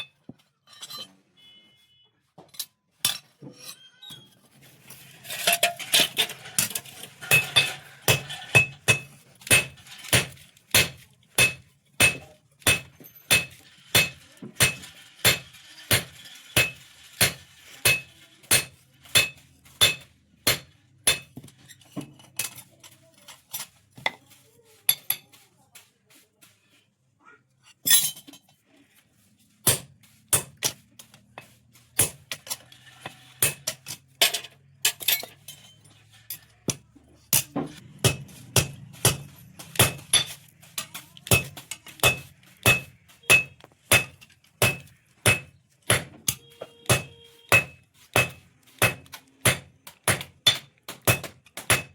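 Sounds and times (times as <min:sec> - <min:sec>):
hammer striking steel on anvil: 0:07.3 - 0:21.5, 0:36.3 - 0:51.9.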